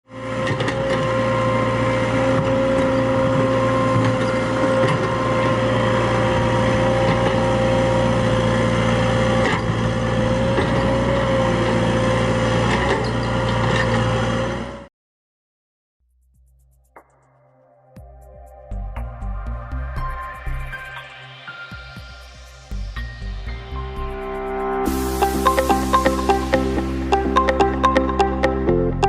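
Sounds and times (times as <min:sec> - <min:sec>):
excavator engine drone: 0:00.1 - 0:14.9, 0:19.1 - 0:29.0
steady whine: 0:19.0 - 0:29.0.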